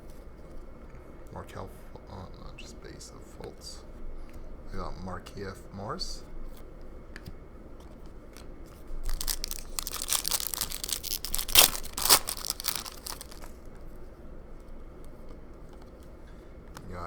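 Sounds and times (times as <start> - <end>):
foil wrapper tearing and crinkling: 9.0 - 13.7.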